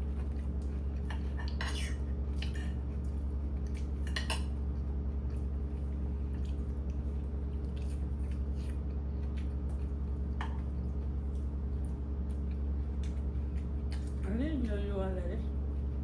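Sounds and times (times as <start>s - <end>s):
steady low hum: 0.0s - 16.0s
utensils clinking against dishes: 1.1s - 2.8s, 4.0s - 4.5s.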